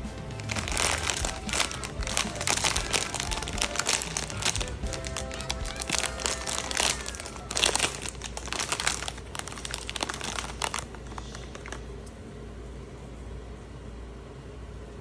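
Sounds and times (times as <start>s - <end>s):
plastic packaging crinkling: 0.0s - 11.9s.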